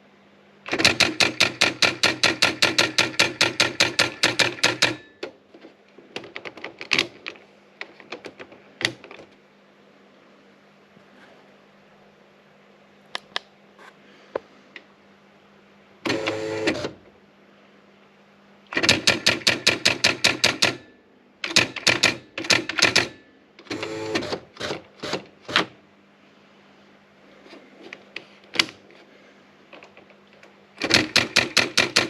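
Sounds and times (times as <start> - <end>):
typewriter rapid strikes: 0.7 - 5.2, 18.8 - 23.2, 30.8 - 32.0
typewriter key clicks: 18.7 - 20.8, 30.8 - 32.0.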